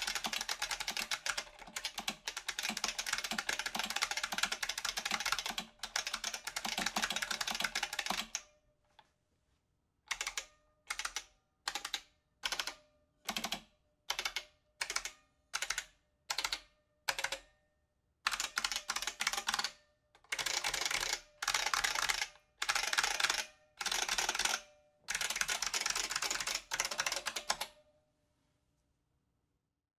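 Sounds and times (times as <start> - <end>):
clicky keyboard typing: 0.0 - 8.4, 10.1 - 17.4, 18.3 - 27.8.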